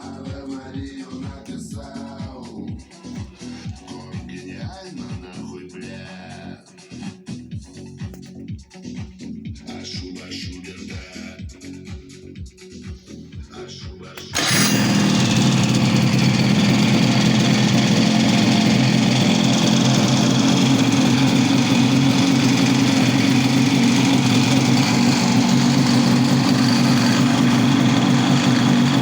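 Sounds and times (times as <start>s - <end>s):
snowmobile engine running: 14.2s - 29.0s.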